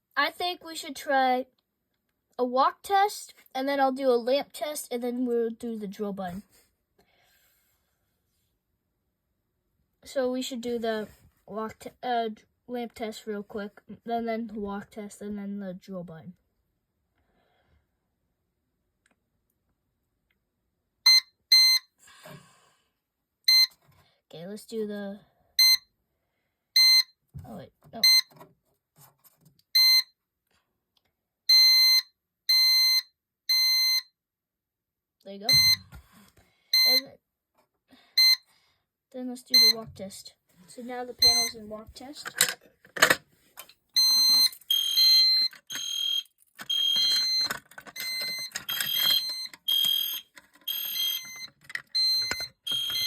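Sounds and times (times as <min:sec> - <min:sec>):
fire alarm sounder beeping: 0:21.1 - 0:21.9, 0:25.6 - 0:25.9, 0:26.8 - 0:27.1, 0:29.8 - 0:30.1, 0:31.5 - 0:34.1, 0:35.5 - 0:35.9, 0:36.8 - 0:37.1, 0:39.6 - 0:39.8, 0:41.2 - 0:41.6, 0:44.0 - 0:53.0.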